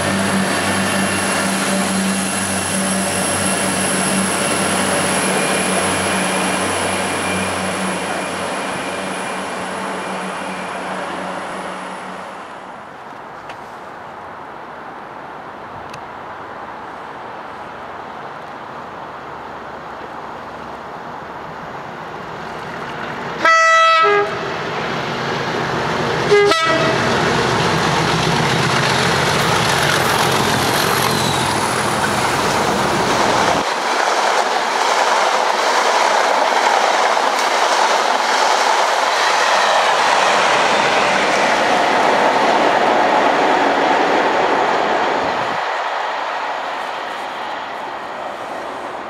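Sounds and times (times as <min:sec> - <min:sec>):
train rumbling and clattering past: 0:00.0 - 0:13.2, 0:20.8 - 0:49.0
train horn: 0:23.4 - 0:24.5, 0:26.3 - 0:27.1.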